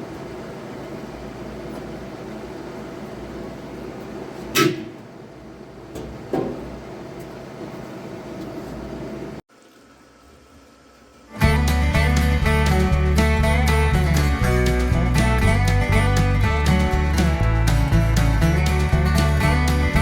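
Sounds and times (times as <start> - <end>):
vacuum pump humming: 10.2 - 20.0.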